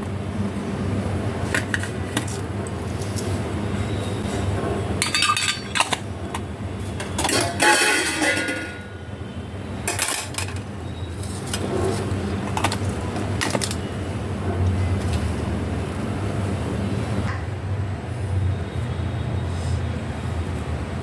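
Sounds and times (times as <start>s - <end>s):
dishes and utensils clinking: 5.0s - 8.9s, 9.9s - 13.8s.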